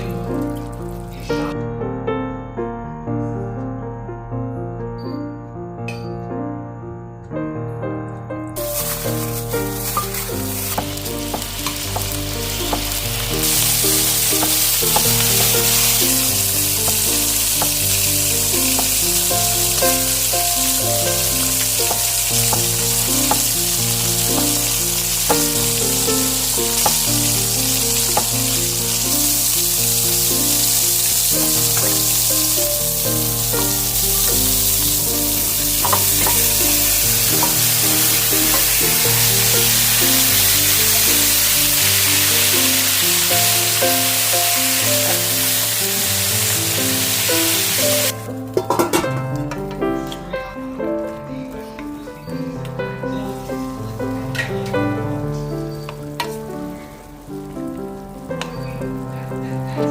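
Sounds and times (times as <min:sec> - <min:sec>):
food sizzling in hot oil: 0:08.6 - 0:48.9, 0:55.4 - 0:59.5.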